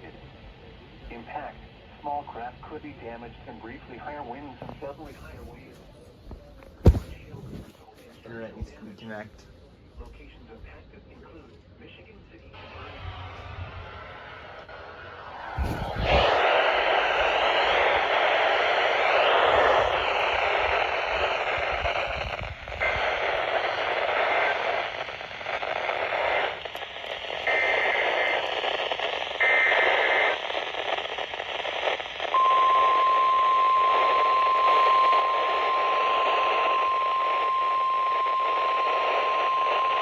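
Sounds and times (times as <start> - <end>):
radio static hissing and crackling: 0.0 - 40.0
data tone bursts: 32.3 - 40.0
steady high alarm beep: 32.3 - 40.0.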